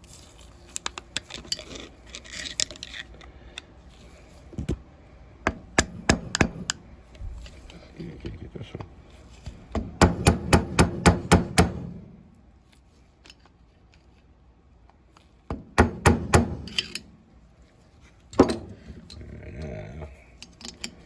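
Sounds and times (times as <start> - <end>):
metallic clicks of hand tools: 16.5 - 17.1, 20.4 - 21.0.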